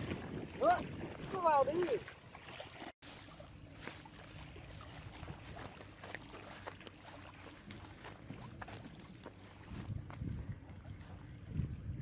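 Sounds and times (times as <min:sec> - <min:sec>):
wind rumble on microphone: 0:00.0 - 0:02.0, 0:04.3 - 0:06.1, 0:07.2 - 0:12.0.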